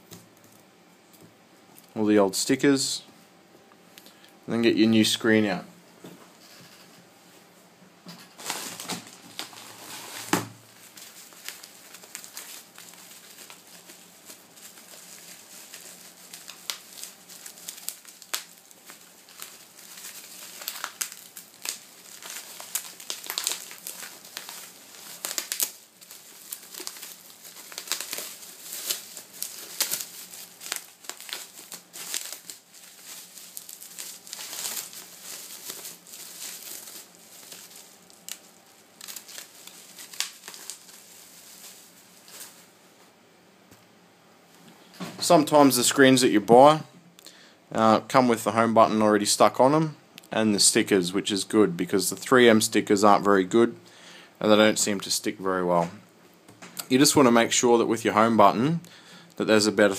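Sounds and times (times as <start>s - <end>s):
plastic packaging crinkling: 8.2s - 43.0s.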